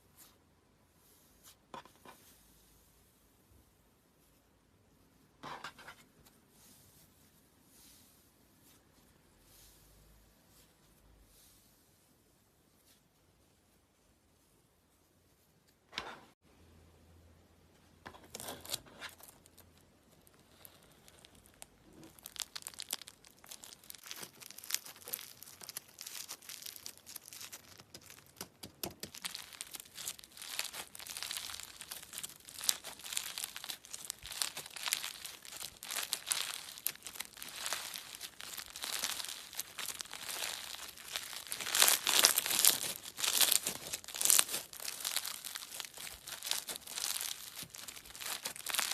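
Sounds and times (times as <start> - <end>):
slime crackling and popping: 18.4 - 48.9.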